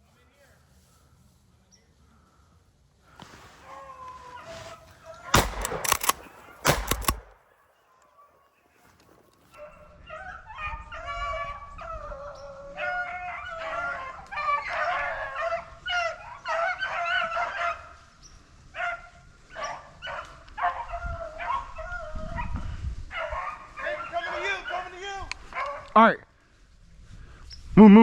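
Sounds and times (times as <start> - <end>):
hounds baying and yelping: 9.5 - 18.1, 18.7 - 26.0.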